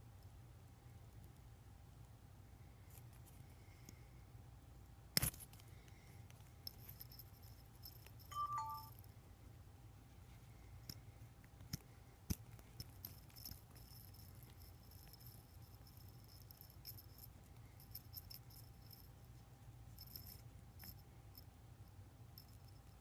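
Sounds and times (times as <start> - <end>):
gritty bearing clicking and rattling: 6.3 - 8.4, 11.6 - 19.2.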